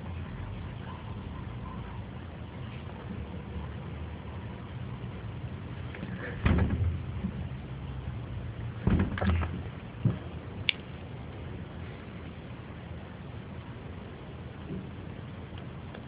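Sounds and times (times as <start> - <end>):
steady low hum: 0.0 - 16.0
dull knocks and thumps: 6.0 - 7.6, 8.8 - 10.3.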